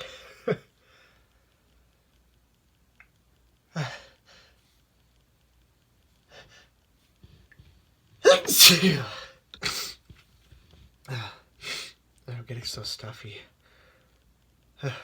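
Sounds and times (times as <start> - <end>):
man sneezing: 8.2 - 9.2.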